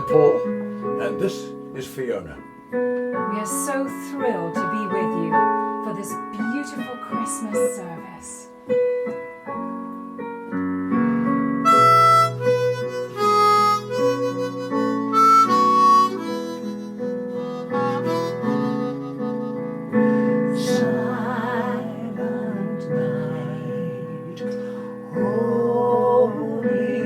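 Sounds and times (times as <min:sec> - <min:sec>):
sustained keyboard chords: 0:00.0 - 0:27.0
harmonica melody: 0:11.3 - 0:21.2.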